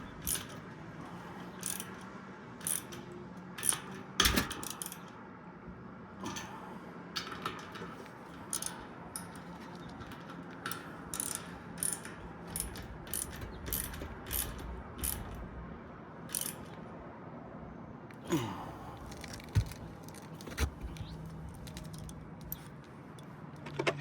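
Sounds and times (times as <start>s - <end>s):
ratchet wrench clicking: 0.0s - 5.2s, 7.2s - 16.9s, 19.0s - 23.3s.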